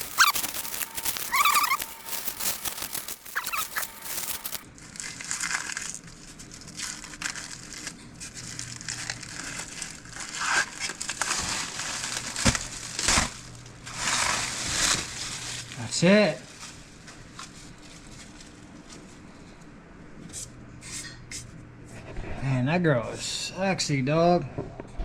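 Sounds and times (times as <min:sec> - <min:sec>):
packaging tearing: 0:00.0 - 0:15.8
packaging rustling and crumpling: 0:00.0 - 0:18.7.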